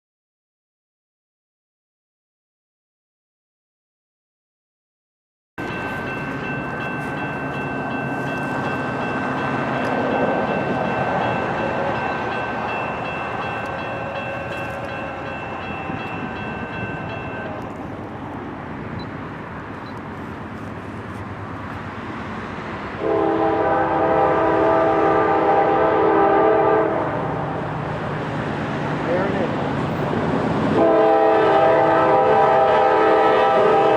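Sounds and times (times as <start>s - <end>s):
freight train rumbling: 5.6s - 33.9s
locomotive air horn: 23.0s - 27.3s, 30.8s - 33.9s.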